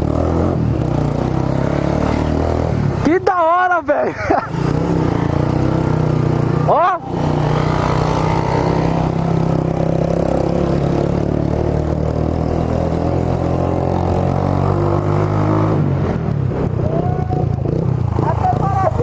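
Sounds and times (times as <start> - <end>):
motorcycle engine running: 4.3 - 19.0.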